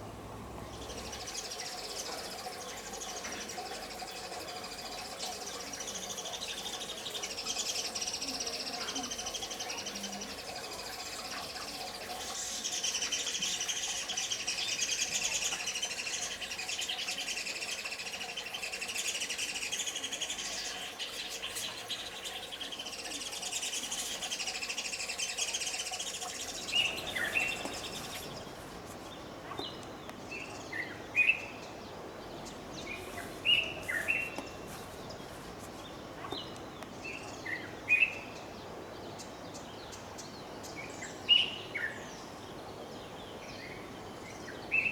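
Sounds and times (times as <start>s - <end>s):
birds trilling chorus: 0.6s - 44.9s
bird chirps: 0.7s - 31.7s, 32.5s - 38.3s.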